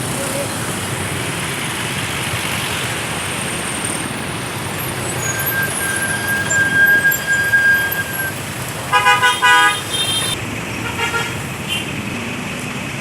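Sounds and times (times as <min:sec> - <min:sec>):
road traffic: 0:00.0 - 0:13.0
vehicle horn blasts: 0:05.2 - 0:11.8.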